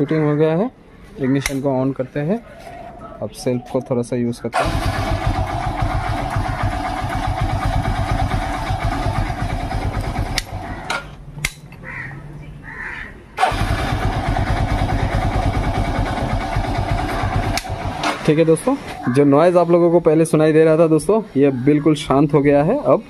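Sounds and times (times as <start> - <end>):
electric starter cranking: 4.6 - 10.7, 13.4 - 18.4
motorcycle engine running: 4.6 - 10.9, 13.4 - 18.4.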